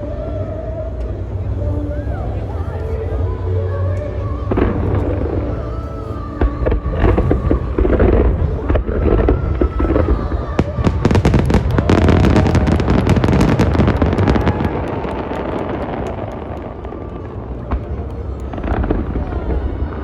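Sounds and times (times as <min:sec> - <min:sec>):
low rumble: 0:00.0 - 0:20.0
fireworks crackling: 0:04.4 - 0:20.0
fireworks bursting: 0:04.5 - 0:20.0.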